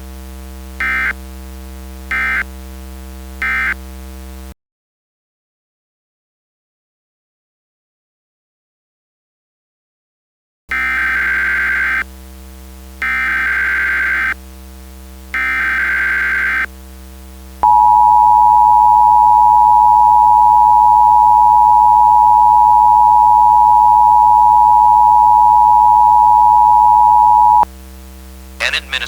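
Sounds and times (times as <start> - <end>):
buzzing data bursts: 10.7 - 29.0
two-tone attention signal: 17.6 - 27.6.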